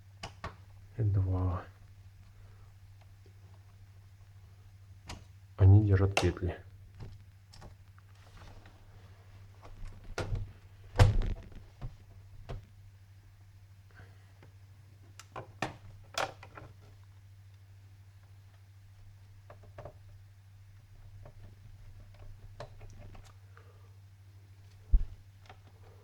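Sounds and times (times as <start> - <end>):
steady low hum: 20.0 - 26.0.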